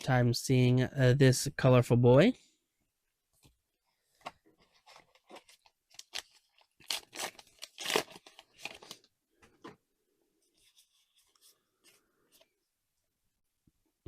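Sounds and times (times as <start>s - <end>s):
wrapper tearing and crinkling: 5.3s - 9.0s.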